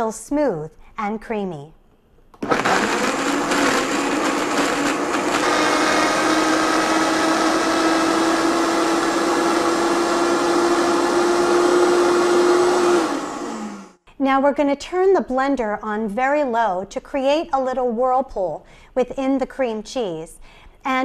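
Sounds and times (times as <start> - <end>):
blender motor whining: 2.4 - 14.0.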